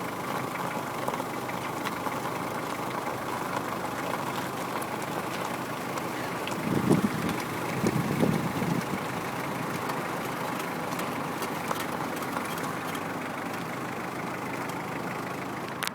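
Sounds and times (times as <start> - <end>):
car idling: 0.0 - 15.9.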